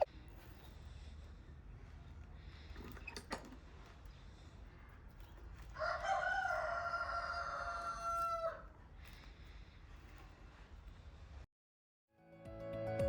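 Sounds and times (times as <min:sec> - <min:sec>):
rooster crowing: 0:05.8 - 0:08.7.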